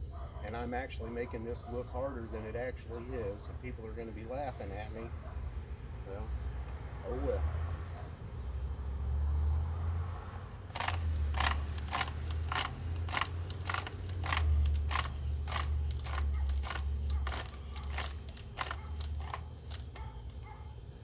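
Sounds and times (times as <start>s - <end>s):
ratchet clicks: 10.7s - 20.5s.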